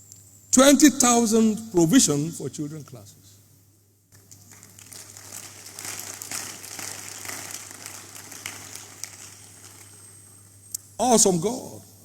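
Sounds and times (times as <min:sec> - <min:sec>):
congregation applauding: 0:04.2 - 0:10.3.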